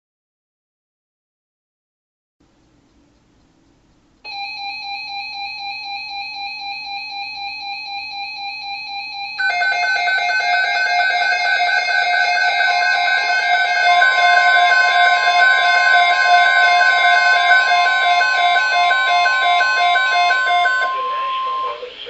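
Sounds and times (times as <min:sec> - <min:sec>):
electronic alert tones: 0:04.3 - 0:21.8
faint hiss: 0:21.0 - 0:22.0.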